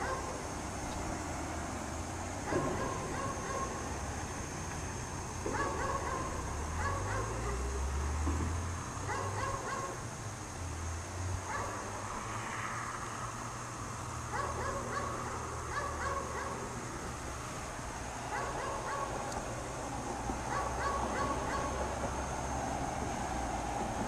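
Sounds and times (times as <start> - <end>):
dog barking: 0.0 - 0.3, 2.5 - 3.8, 5.5 - 7.7, 9.1 - 10.0, 11.5 - 11.8, 14.3 - 16.6, 18.3 - 19.2, 20.5 - 21.8.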